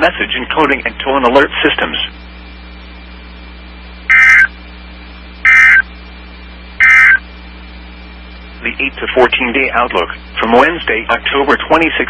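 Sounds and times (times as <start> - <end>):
radio hiss and hum: 0.0 - 12.0
buzzy digital data bursts: 4.1 - 4.6, 5.4 - 5.9, 6.8 - 7.3.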